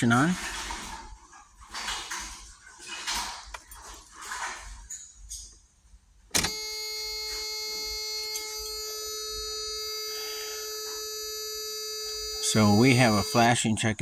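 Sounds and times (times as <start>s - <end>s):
dashboard warning buzzer: 6.4s - 13.7s.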